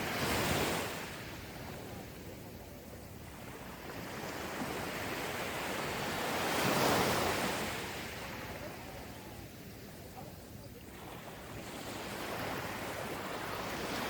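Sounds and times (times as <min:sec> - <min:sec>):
ocean waves on sandy beach: 0:00.0 - 0:14.0.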